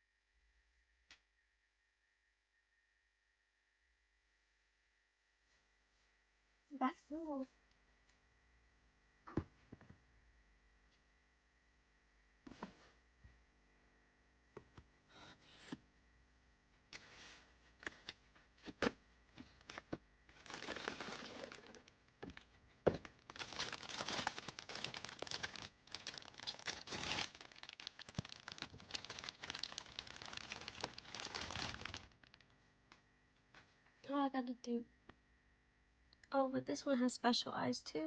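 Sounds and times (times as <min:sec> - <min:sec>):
plastic packaging crinkling and tearing: 0:19.6 - 0:32.5.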